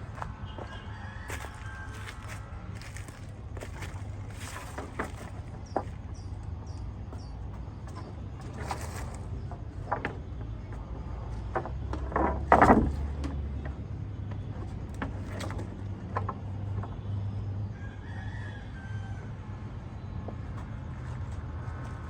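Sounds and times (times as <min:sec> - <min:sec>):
rooster crowing: 0:00.1 - 0:04.0, 0:17.7 - 0:19.6.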